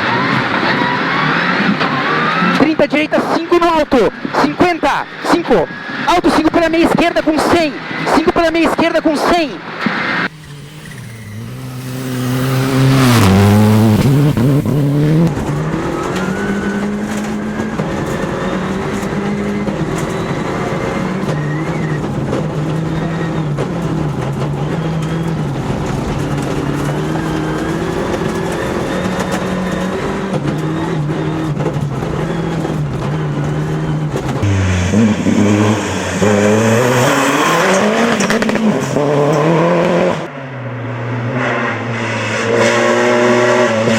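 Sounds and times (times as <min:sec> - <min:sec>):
car engine revving hard: 0:00.0 - 0:43.9.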